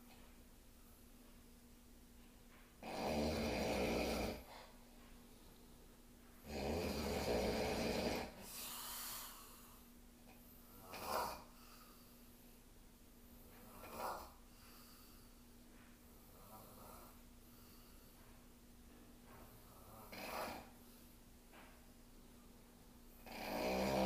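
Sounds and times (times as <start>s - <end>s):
faint steady hum: 0.0s - 24.0s
person snoring: 2.8s - 4.7s, 6.4s - 9.7s, 10.8s - 11.6s, 13.6s - 14.4s, 19.7s - 20.8s, 23.2s - 24.0s
short snort: 10.8s - 11.5s, 13.7s - 14.4s, 19.9s - 20.8s.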